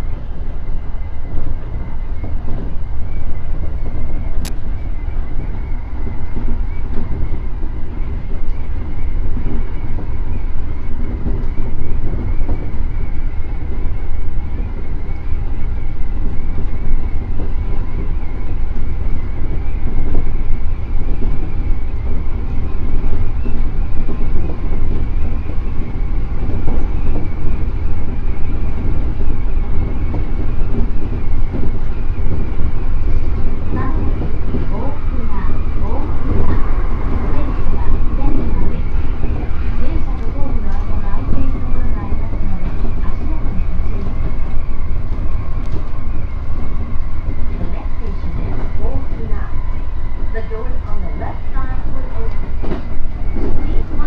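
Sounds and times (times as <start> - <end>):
faint steady whine: 0.0 - 54.0
train wheels rumbling on rail: 0.0 - 54.0.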